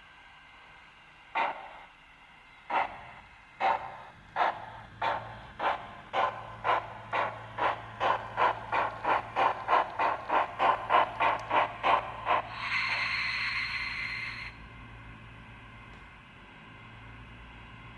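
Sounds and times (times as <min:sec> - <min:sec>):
steady steam hiss: 0:00.0 - 0:14.7
low hum from model: 0:00.0 - 0:17.9
model steam exhaust chuffs: 0:01.2 - 0:15.0.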